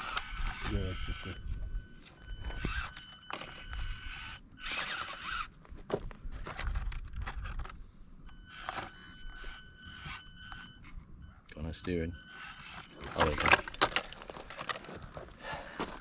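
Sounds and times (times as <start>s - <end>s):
small electric motor whine: 0.0s - 14.1s
tyres scraping on stones: 12.3s - 16.0s.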